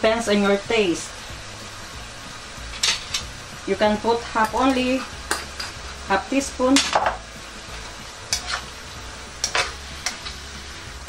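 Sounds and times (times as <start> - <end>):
meat and vegetables sizzling: 0.0 - 11.0
utensil scraping pan: 8.3 - 8.8.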